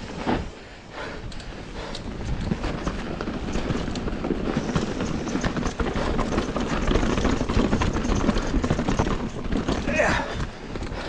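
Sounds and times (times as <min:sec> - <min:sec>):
bike rattling: 0:00.0 - 0:11.0
tyres crunching over gravel: 0:03.0 - 0:10.6.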